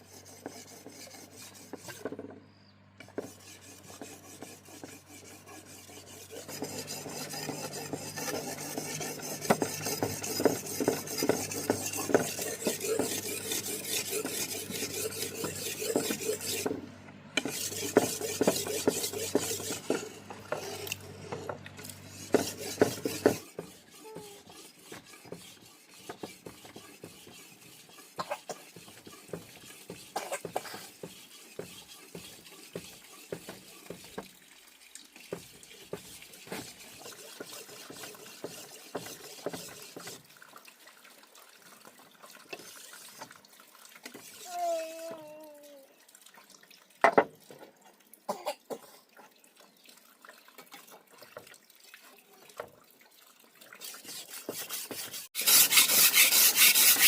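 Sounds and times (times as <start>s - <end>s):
utensil stirring in a cooking pot: 0.0s - 40.6s, 53.6s - 57.0s.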